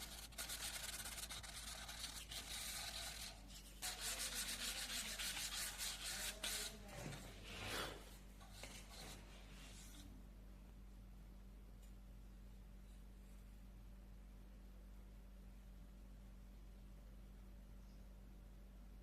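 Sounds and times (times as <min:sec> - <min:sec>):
hand sanding strokes: 0:00.0 - 0:06.8.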